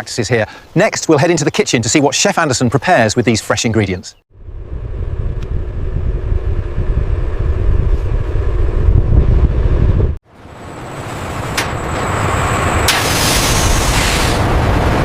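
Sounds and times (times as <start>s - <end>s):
rumbling noise: 4.3s - 15.0s.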